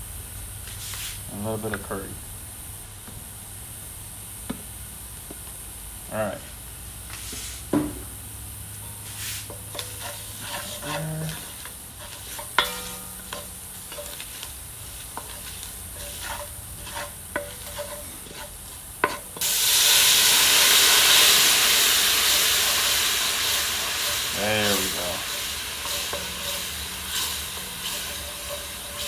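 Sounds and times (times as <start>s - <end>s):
loud steady hiss: 0.0s - 29.0s
oil sizzling: 7.8s - 29.0s
spoon stirring and scraping pot: 8.9s - 19.7s, 22.2s - 29.0s.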